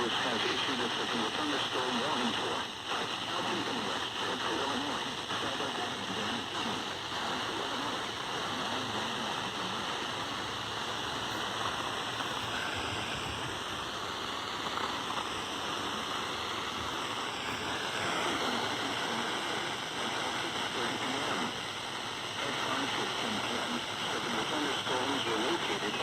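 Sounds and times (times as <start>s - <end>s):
person speaking over radio: 0.0s - 10.3s, 17.4s - 21.7s, 22.3s - 26.0s
radio static hiss: 0.0s - 26.0s.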